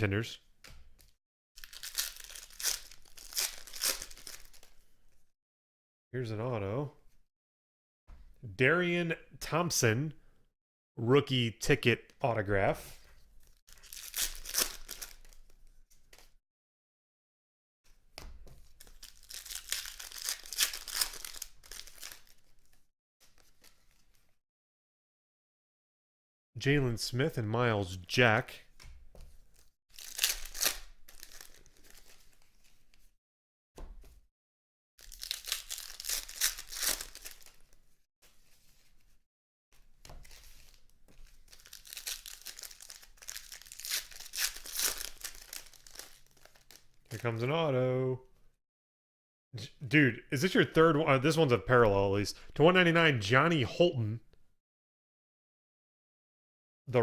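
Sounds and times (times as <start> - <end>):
wrapper tearing and crinkling: 1.6 - 4.8, 13.6 - 15.5, 18.6 - 22.8, 29.9 - 32.4, 35.0 - 37.8, 40.2 - 47.2.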